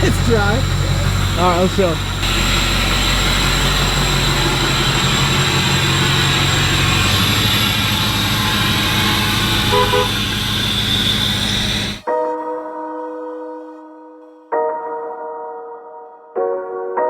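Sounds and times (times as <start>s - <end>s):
high differential whine: 0.0s - 12.1s
pickup truck engine running: 0.0s - 12.1s.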